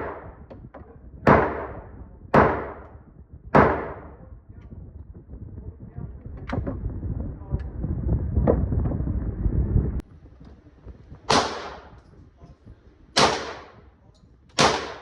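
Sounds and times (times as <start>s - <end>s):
gunshots with echo: 0.0s - 0.4s, 1.3s - 3.0s, 3.6s - 4.2s, 11.3s - 12.0s, 13.2s - 13.8s, 14.6s - 15.0s
low rumbling noise: 0.0s - 15.0s.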